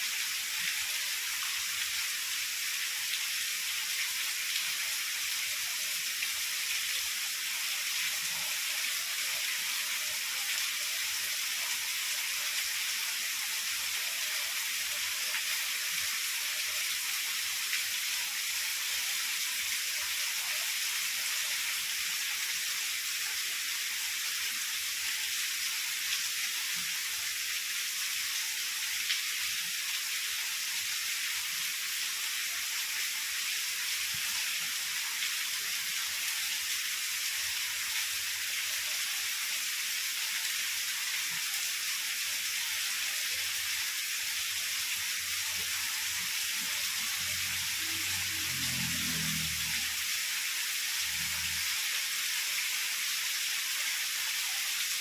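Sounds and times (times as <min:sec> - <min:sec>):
heavy rain hissing: 0:43.4 - 0:52.3.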